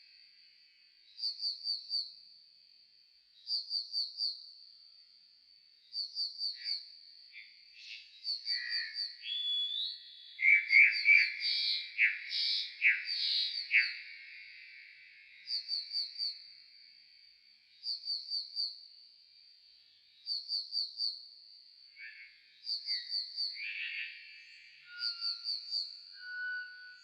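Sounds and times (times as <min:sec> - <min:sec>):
slowed bird song: 0:07.8 - 0:14.1, 0:22.0 - 0:27.0.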